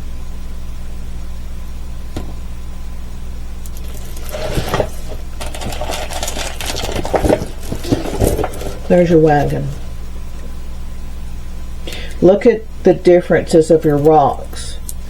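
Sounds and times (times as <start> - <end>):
steady low hum: 0.0 - 15.0
plastic film crinkling: 3.7 - 10.5.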